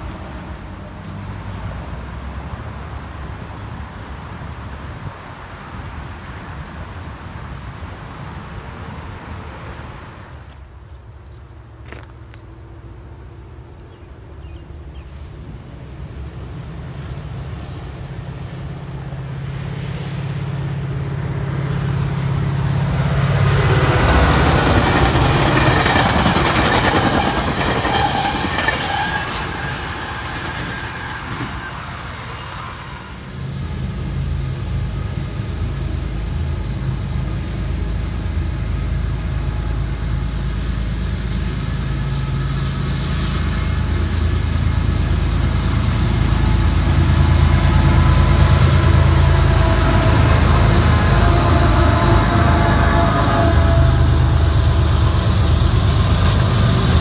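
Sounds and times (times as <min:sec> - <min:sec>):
diesel locomotive engine drone: 0:00.0 - 0:57.0
low engine rumble: 0:10.6 - 0:32.2, 0:33.2 - 0:57.0
train wheel noise: 0:11.6 - 0:57.0
high squeal from rails: 0:13.9 - 0:57.0.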